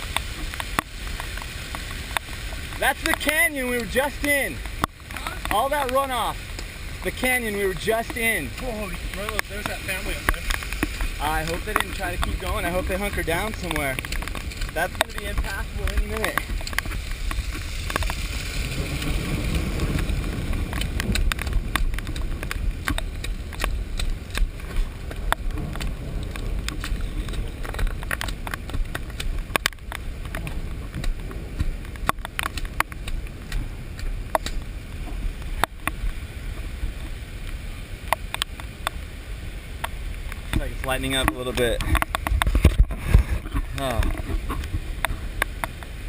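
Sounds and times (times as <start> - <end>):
muffled low rumble: 2.0 - 38.0.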